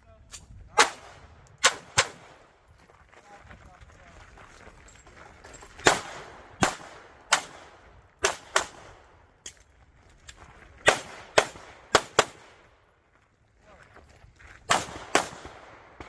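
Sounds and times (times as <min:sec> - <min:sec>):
pistol shots with echo: 0:00.8 - 0:02.5, 0:05.8 - 0:09.2, 0:10.8 - 0:12.6, 0:14.7 - 0:16.0.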